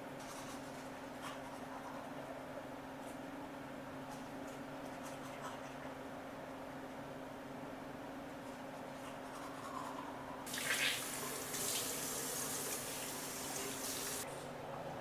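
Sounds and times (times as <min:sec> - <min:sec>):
water running from a tap: 0:10.5 - 0:14.2.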